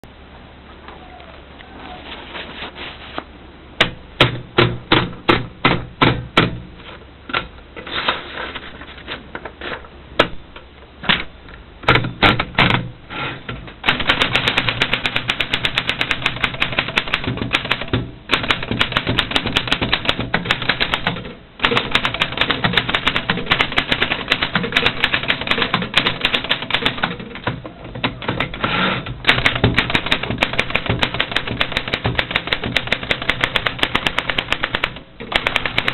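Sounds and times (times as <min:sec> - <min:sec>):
typewriter keystrokes: 0:13.8 - 0:28.6, 0:29.3 - 0:35.9.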